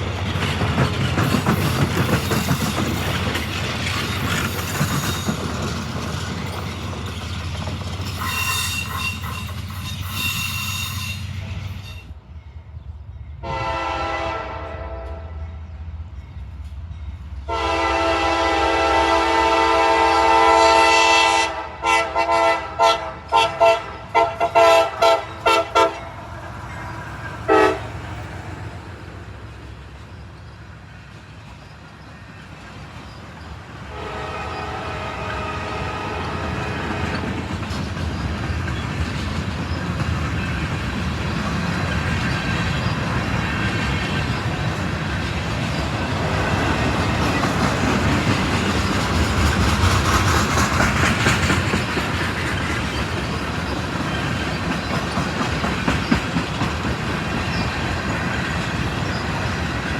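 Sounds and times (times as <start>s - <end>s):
train rumbling by: 0.0s - 59.9s
locomotive air horn: 13.4s - 15.4s, 17.5s - 26.1s, 27.5s - 28.0s, 33.9s - 37.3s.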